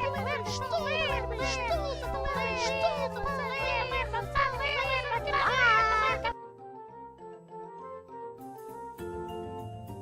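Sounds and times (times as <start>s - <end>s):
soft flute-like background music: 0.0s - 10.0s.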